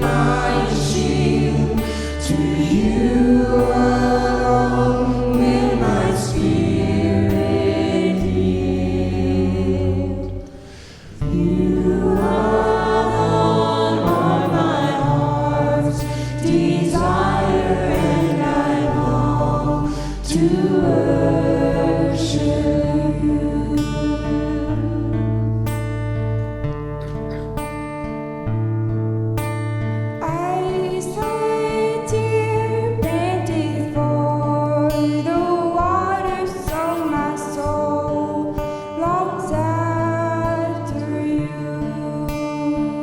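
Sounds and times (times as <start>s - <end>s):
voices singing together: 0.0s - 25.5s, 30.3s - 43.0s
low held chords: 0.0s - 27.3s.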